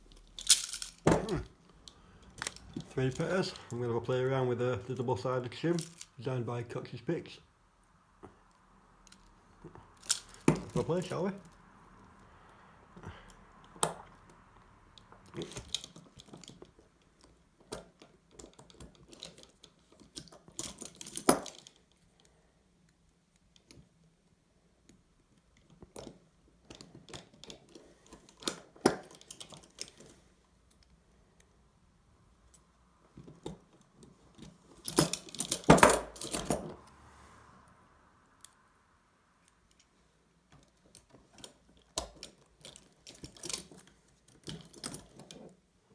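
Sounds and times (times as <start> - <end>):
handcuffs clicking and rattling: 0.1 - 3.7, 5.7 - 6.2, 10.0 - 11.2, 15.3 - 21.8, 26.7 - 30.1, 32.5 - 36.7, 40.7 - 45.5.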